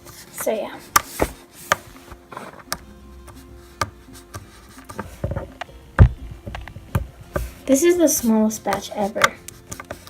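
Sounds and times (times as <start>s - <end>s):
thump: 1.2s - 1.4s.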